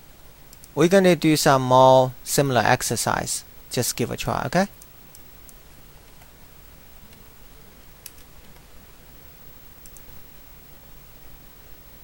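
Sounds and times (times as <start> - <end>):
faint room hiss: 0.0 - 12.0
small clicks: 0.5 - 0.8, 9.8 - 10.2.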